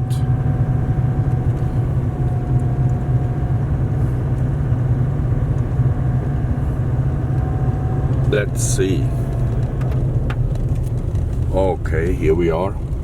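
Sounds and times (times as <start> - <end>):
engine and tyre rumble: 0.0 - 13.0.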